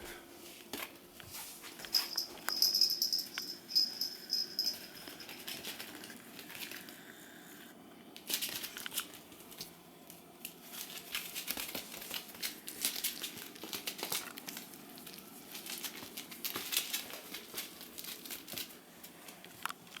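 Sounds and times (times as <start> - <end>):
puppies rustling on crinkly bedding: 4.6 - 7.0, 8.2 - 20.0.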